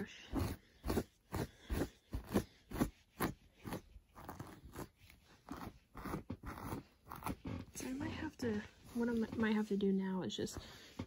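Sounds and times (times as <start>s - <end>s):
hairbrush rasping through hair: 0.0s - 9.8s.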